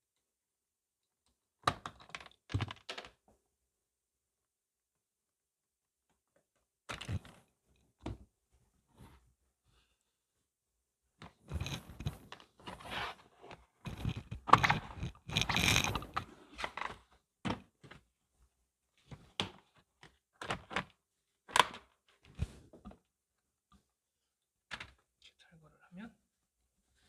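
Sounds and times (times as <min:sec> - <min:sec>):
plastic rustling and scraping: 0:11.3 - 0:17.1.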